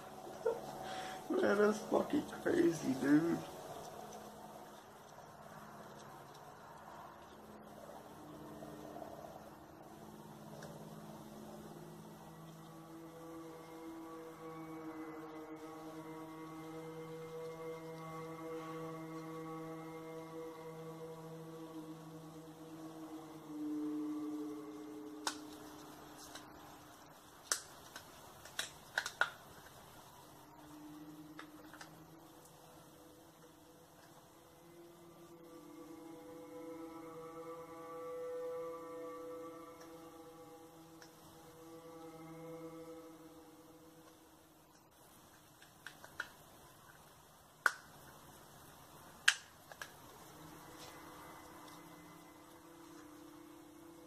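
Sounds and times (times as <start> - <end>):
trumpet-like drone from sky: 11.4 - 25.9, 34.6 - 44.0, 50.4 - 54.0.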